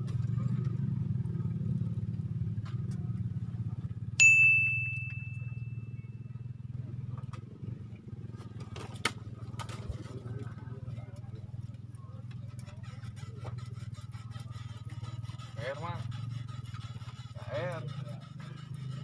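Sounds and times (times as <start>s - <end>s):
metallic ding: 4.2s - 6.2s
low hum: 4.2s - 8.0s.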